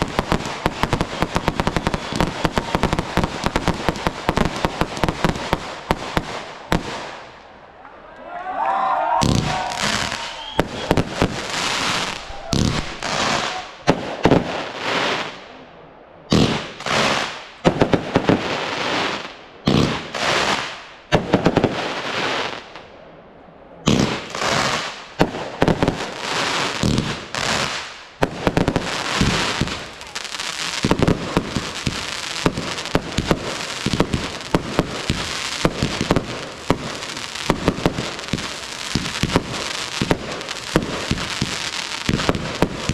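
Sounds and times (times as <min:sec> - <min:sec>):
dense firework crackling: 0:00.0 - 0:07.4, 0:09.2 - 0:15.5, 0:23.9 - 0:42.9
fireworks bangs and crackle: 0:00.0 - 0:07.4, 0:09.2 - 0:15.6, 0:16.3 - 0:22.9, 0:23.8 - 0:42.9.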